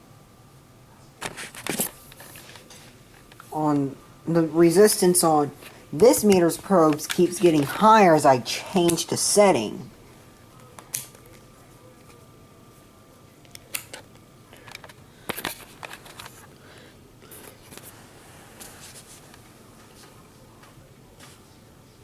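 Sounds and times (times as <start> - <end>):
test probes handling rustles: 1.2 - 9.1, 13.5 - 21.5.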